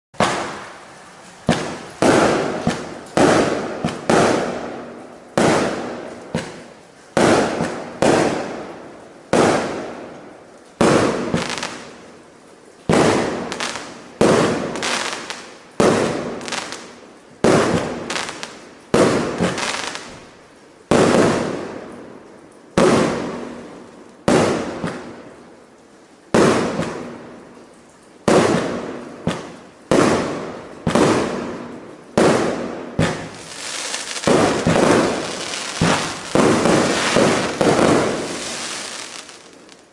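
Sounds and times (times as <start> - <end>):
firework cake bangs: 1.5 - 4.6, 28.3 - 31.5, 32.2 - 39.6.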